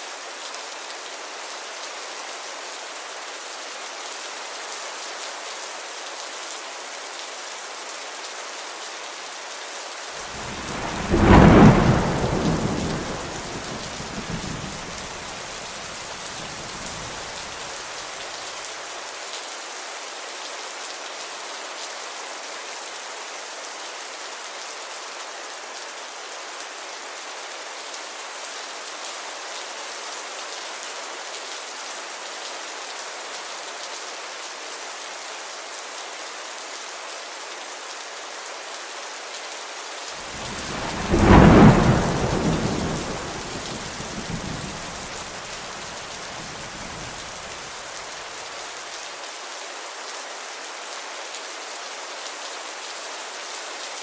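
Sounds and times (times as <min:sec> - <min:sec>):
steady rain: 0:00.0 - 0:54.0
thunder rumbling: 0:10.3 - 0:17.6, 0:40.2 - 0:47.8.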